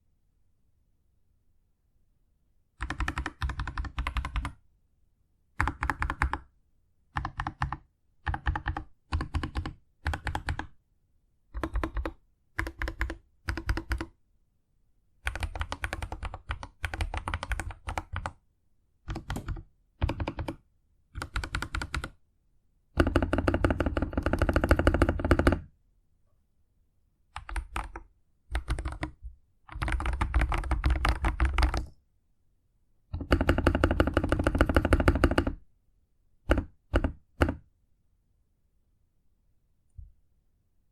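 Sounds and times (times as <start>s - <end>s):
typing on mechanical keyboard: 2.8s - 4.6s, 5.6s - 6.5s, 7.2s - 10.8s, 11.6s - 14.1s, 15.2s - 18.4s, 19.1s - 20.6s, 21.2s - 22.2s, 23.0s - 25.7s, 27.4s - 31.9s, 33.1s - 35.6s, 36.5s - 37.6s.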